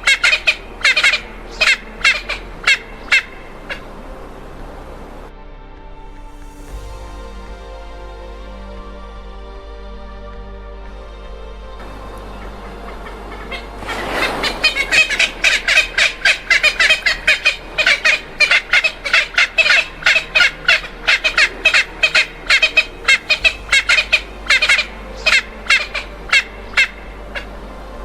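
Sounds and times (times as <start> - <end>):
bird harsh repeated calls: 0.0 - 3.8, 12.4 - 27.6.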